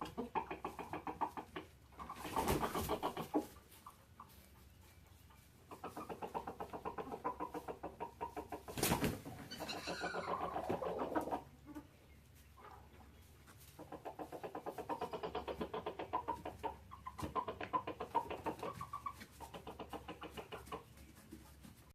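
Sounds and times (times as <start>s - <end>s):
chickens clucking: 0.0s - 21.9s
chicken squawk: 5.7s - 11.9s.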